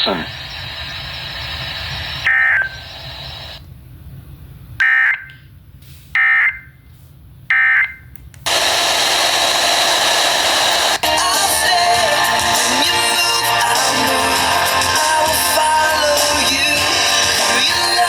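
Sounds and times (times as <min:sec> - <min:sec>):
loud steady hiss: 0:00.0 - 0:03.7, 0:08.5 - 0:18.0.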